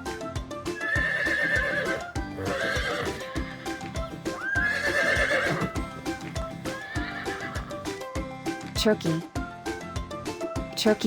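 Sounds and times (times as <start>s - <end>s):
background music with steady beat: 0.0s - 11.0s
horse whinnying: 0.8s - 7.9s.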